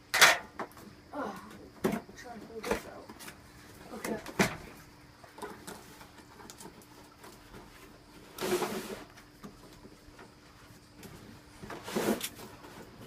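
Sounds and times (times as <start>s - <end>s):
rustling scrape: 5.5s - 9.3s, 11.2s - 13.0s.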